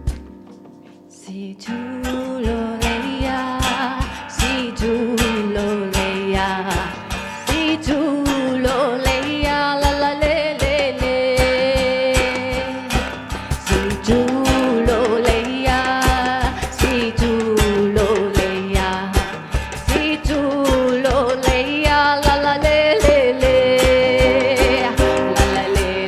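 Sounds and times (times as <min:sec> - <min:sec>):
guitar: 0:00.0 - 0:26.0
person singing: 0:01.2 - 0:26.0
steady low drum beat: 0:22.3 - 0:26.0.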